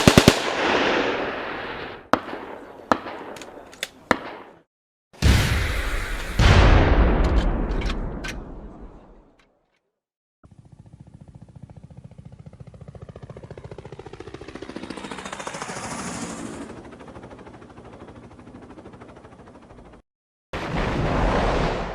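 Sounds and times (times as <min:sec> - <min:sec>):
sharp cracks: 0:00.0 - 0:01.0
loud explosion: 0:05.2 - 0:09.0, 0:20.6 - 0:21.9.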